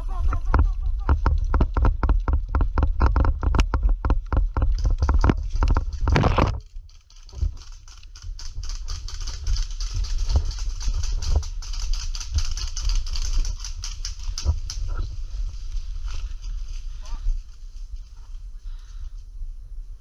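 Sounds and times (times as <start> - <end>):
rustling and shuffling through grass: 4.3 - 20.0.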